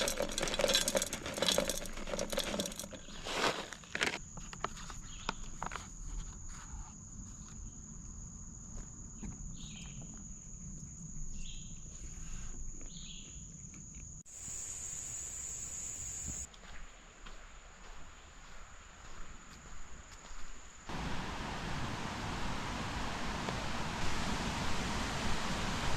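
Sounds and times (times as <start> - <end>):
high-pitched insect drone: 14.3 - 16.5
footsteps: 16.2 - 20.6.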